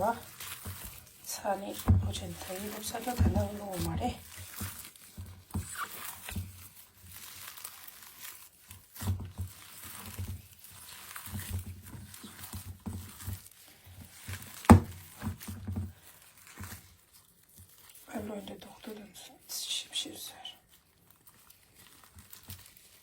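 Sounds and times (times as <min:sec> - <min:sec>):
rustling: 0:00.0 - 0:23.0
kitchen knocks and thumps: 0:14.6 - 0:15.9.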